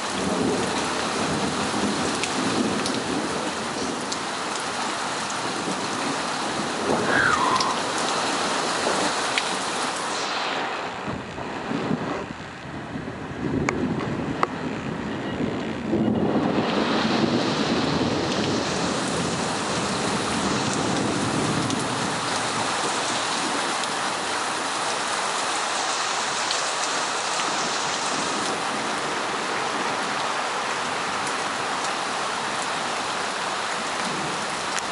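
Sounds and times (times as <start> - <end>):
low thunder rumble: 0.0 - 4.0, 5.4 - 9.2
heavy rain pouring: 0.0 - 34.9.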